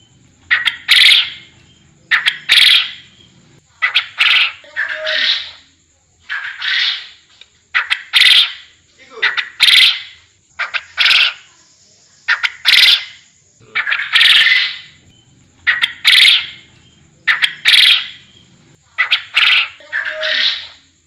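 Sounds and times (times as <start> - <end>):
quail two-part call: 0.5 - 1.5, 2.1 - 3.1, 3.8 - 5.6, 6.2 - 7.2, 7.8 - 11.5, 12.3 - 15.0, 15.6 - 16.7, 17.3 - 18.2, 19.0 - 20.8.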